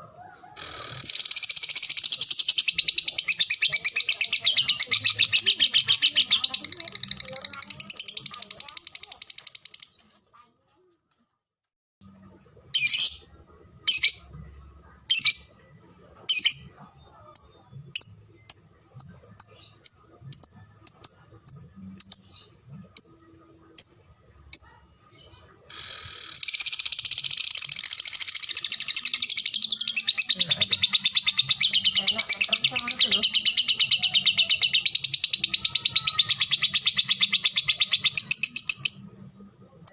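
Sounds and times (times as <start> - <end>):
lovebird chirping and trilling: 0.6 - 10.0, 12.7 - 14.4, 15.1 - 15.5, 16.2 - 16.7, 17.3 - 39.1.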